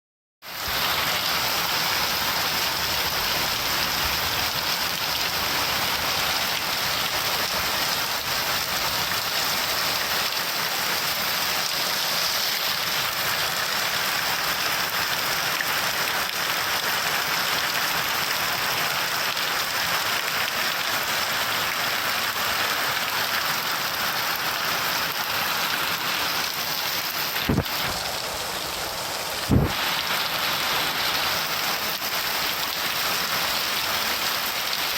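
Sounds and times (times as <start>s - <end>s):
steady rain falling: 0.5s - 34.9s
low thump: 29.5s - 29.7s.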